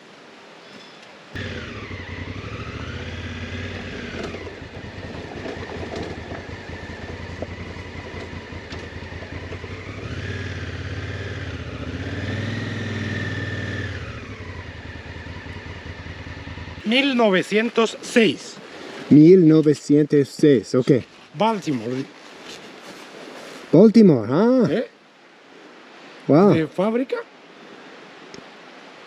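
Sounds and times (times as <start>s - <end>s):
motorcycle engine revving: 1.4s - 16.9s.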